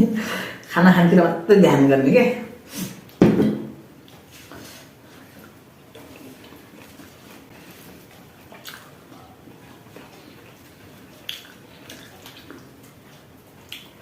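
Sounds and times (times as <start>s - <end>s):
wet chewing: 4.0s - 14.0s.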